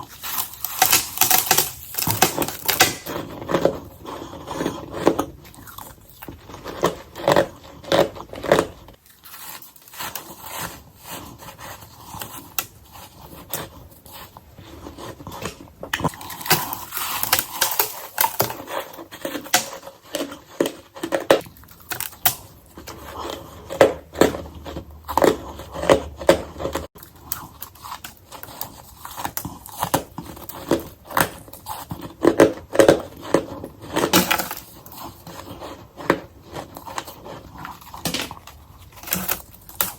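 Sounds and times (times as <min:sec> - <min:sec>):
ice being crunched: 0:00.0 - 0:03.4, 0:16.0 - 0:20.4, 0:32.8 - 0:34.9.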